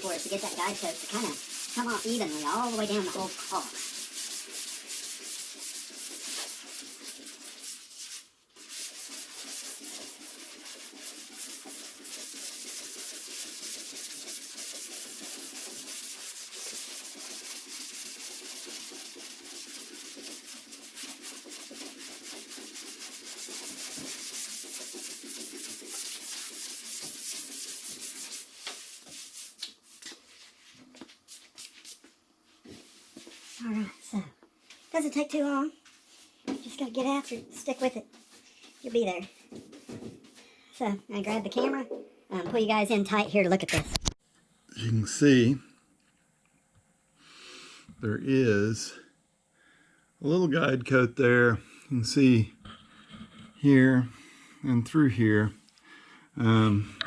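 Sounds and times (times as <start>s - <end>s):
sandpaper rasping on car panel: 0.0s - 29.7s.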